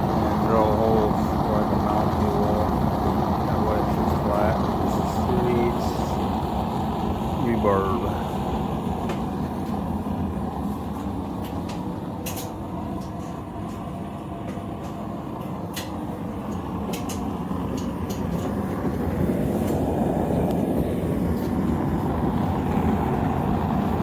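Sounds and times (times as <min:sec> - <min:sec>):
forge rushing noise: 0:00.0 - 0:12.1.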